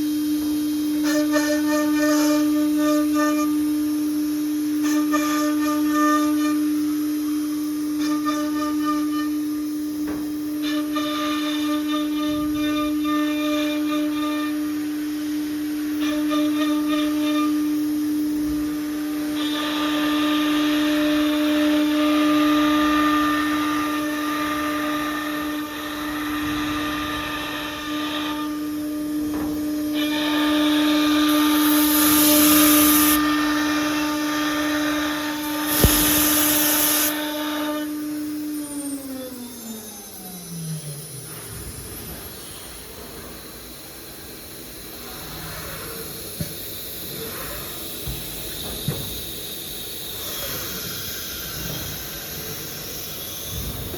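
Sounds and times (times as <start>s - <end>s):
router spindle whine: 0.0s - 53.9s
air hiss bursts: 29.2s - 37.8s.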